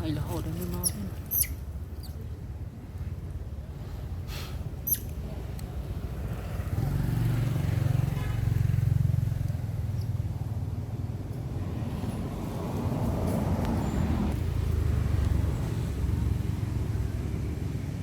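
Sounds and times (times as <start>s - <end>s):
short high squeaks: 0.7s - 2.2s, 4.8s - 5.2s
vehicle rumbling past: 5.8s - 18.0s.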